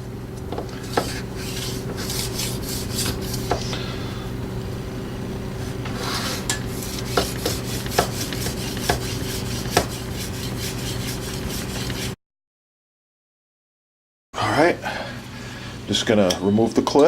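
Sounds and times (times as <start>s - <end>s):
knife scraping on whetstone: 0.6s - 3.8s, 5.6s - 12.2s.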